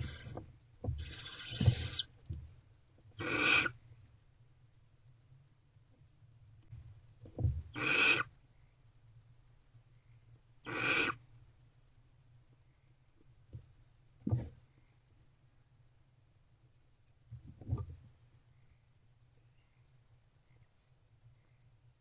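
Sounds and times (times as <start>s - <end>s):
barn owl screeches: 0.0s - 0.4s, 1.0s - 2.1s, 3.2s - 3.8s, 7.8s - 8.3s, 10.6s - 11.2s
soft bumps of movement: 13.5s - 14.6s.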